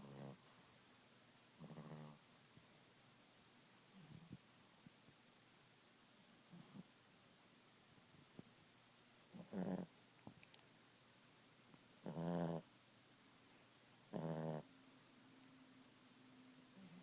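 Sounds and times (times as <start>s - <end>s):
dog snoring: 0.0s - 0.4s, 1.6s - 2.2s, 3.8s - 4.4s, 6.2s - 6.9s, 9.0s - 9.9s, 11.9s - 12.7s, 13.9s - 14.7s, 16.7s - 17.0s.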